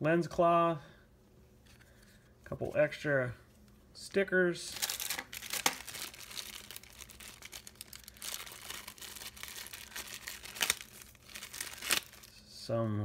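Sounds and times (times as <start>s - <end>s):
plastic bags crinkling: 4.7s - 12.4s.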